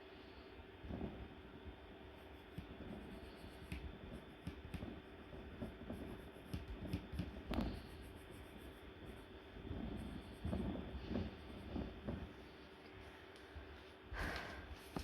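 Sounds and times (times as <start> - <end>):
drawing tool scratching: 2.1 - 12.2.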